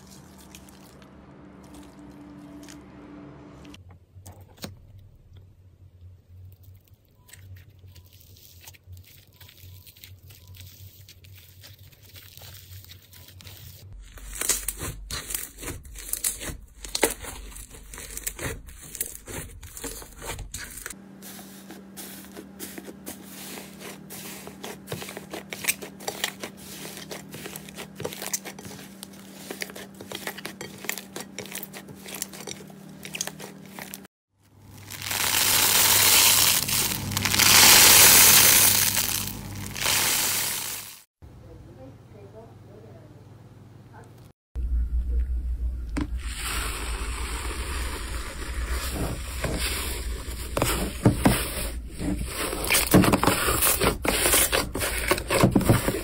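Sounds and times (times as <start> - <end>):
crunchy rustle: 34.7 - 41.1
steady low hum: 44.6 - 52.4.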